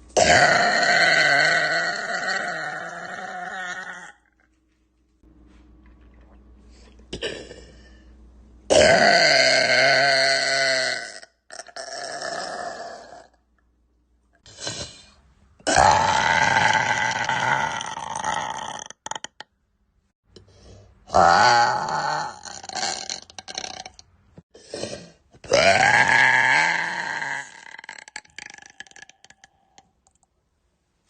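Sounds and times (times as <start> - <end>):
woman belching: 0.2 - 4.2, 8.7 - 13.4, 15.6 - 19.5, 21.1 - 24.1, 25.5 - 29.6
woman burping: 0.2 - 4.2, 7.1 - 7.8, 8.7 - 13.4.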